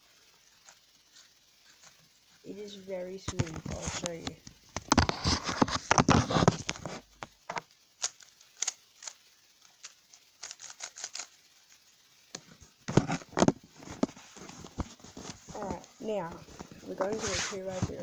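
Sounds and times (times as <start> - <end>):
speed cube clicking: 0.4 - 13.6.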